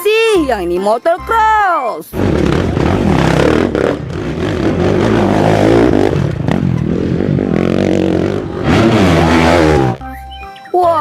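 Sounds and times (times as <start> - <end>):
dirt bike engine revving: 2.1 - 10.0.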